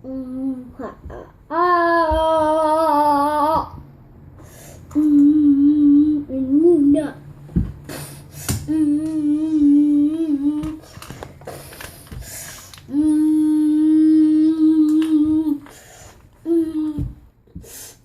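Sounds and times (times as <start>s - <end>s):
child humming: 0.0s - 3.7s, 4.9s - 7.1s, 12.9s - 15.7s, 16.4s - 17.8s.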